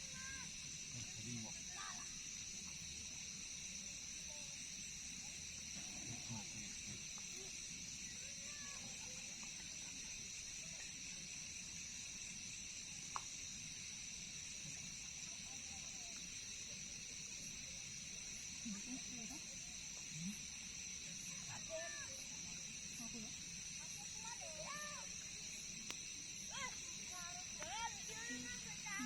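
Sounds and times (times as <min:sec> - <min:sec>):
crickets chirring: 0:00.0 - 0:29.0.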